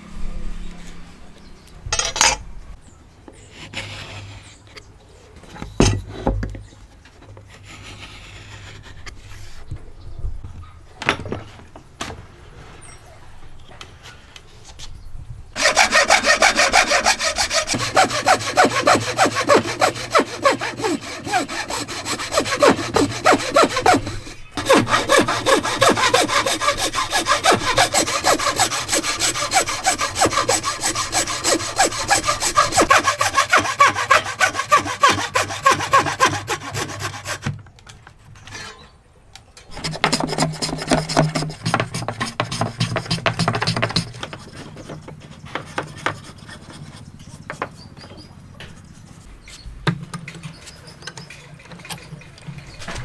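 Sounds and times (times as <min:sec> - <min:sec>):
hand saw cutting wood: 0:15.6 - 0:37.6, 0:39.7 - 0:48.3.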